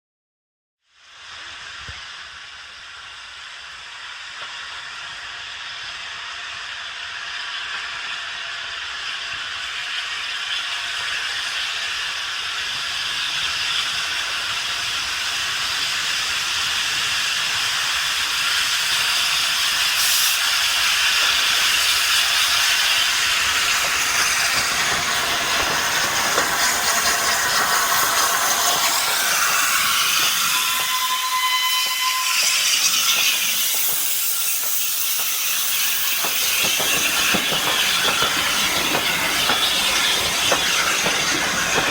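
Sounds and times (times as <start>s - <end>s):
steam locomotive hissing: 1.0s - 41.9s
short whistle note: 28.8s - 35.0s.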